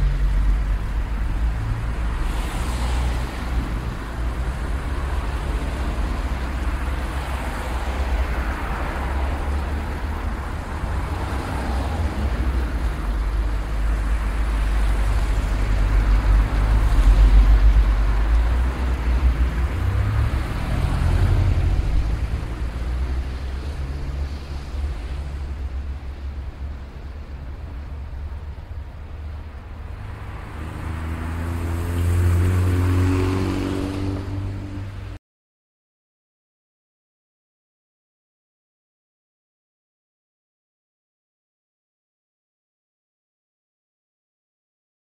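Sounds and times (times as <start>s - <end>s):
cars passing: 0.0s - 35.2s
engine hum: 0.0s - 35.2s.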